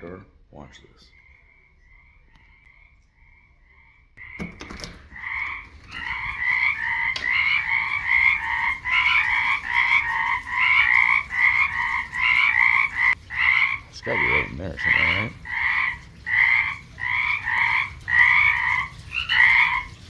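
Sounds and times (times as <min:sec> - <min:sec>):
frogs croaking in chorus: 0:00.8 - 0:20.0
door opening clicks and knocks: 0:04.2 - 0:06.4.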